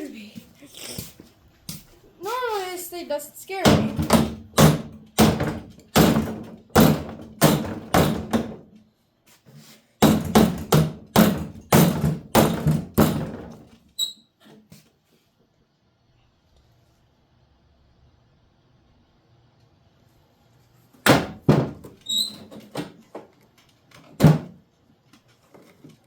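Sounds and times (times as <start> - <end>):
hammer on sheet metal: 3.6 - 8.5, 10.0 - 13.4.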